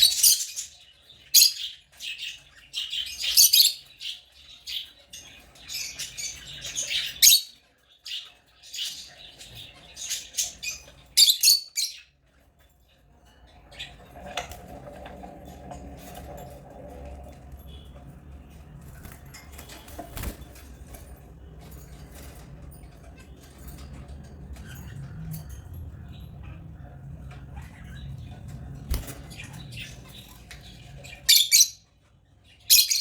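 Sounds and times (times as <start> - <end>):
lovebirds chirping shrilly: 2.8 - 7.6, 8.7 - 12.2, 28.9 - 31.9, 32.6 - 33.0.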